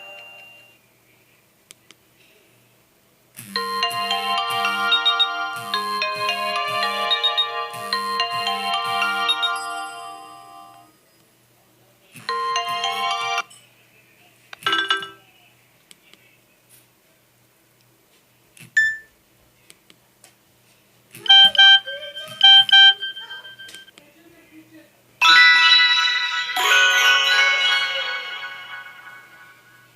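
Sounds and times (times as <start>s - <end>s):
mobile phone ringtone melodies: 0.0s - 0.8s, 3.5s - 10.9s, 12.3s - 13.5s, 14.7s - 15.2s, 21.2s - 23.9s, 25.2s - 29.9s
repeated electronic pulses: 3.4s - 9.9s.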